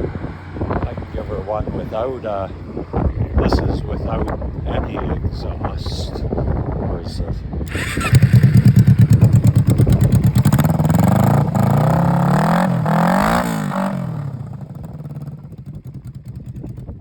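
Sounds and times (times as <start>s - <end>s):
motorcycle engine revving: 7.7s - 17.0s.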